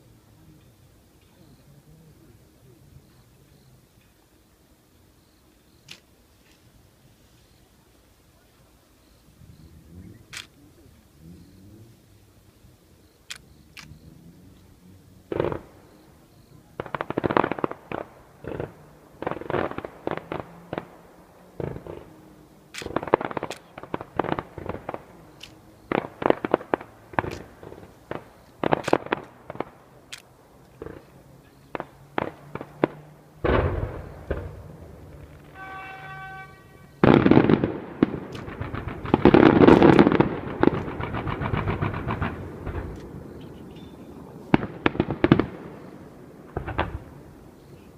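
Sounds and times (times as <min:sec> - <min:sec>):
fireworks bursting with bangs: 0:15.2 - 0:47.9.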